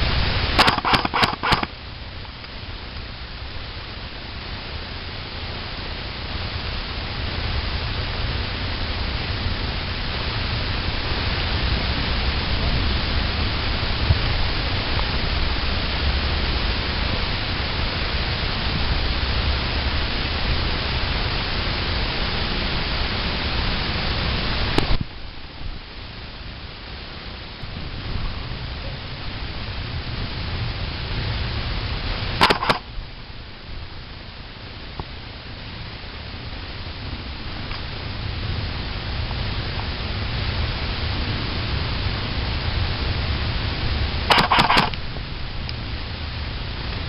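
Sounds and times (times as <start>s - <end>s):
heavy low rumble: 0.0s - 47.0s
steady rushing noise: 0.0s - 47.0s
click: 32.4s - 32.8s, 44.3s - 45.0s.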